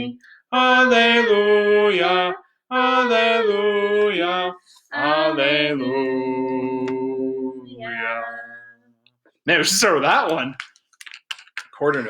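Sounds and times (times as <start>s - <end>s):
voices singing a hymn: 0.0s - 8.7s.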